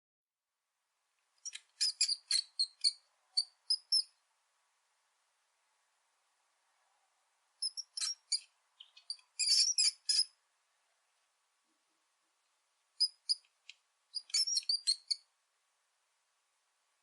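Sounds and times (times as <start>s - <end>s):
rat squeaking: 1.4s - 4.2s, 7.6s - 10.4s, 13.0s - 15.3s.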